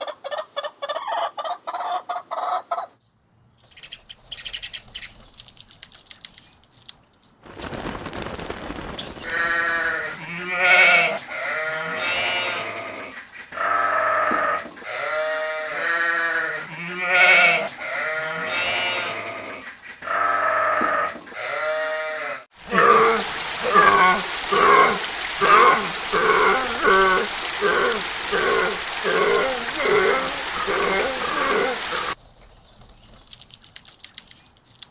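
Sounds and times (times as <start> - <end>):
steady outdoor hiss: 3.1 - 34.9
livestock bleating: 9.3 - 32.2.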